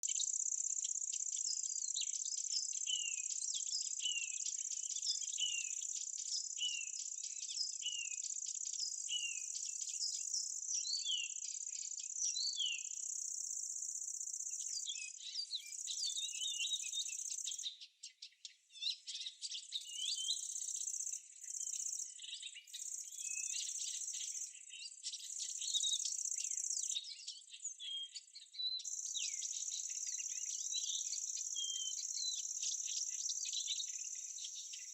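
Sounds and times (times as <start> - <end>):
birds whistling: 0.0 - 34.9.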